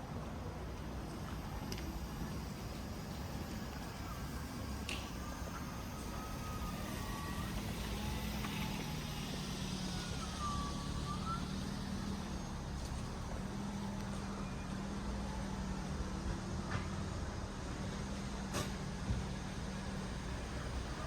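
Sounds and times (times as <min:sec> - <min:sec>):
faint sliding whistle-like tones: 0:01.9 - 0:13.1.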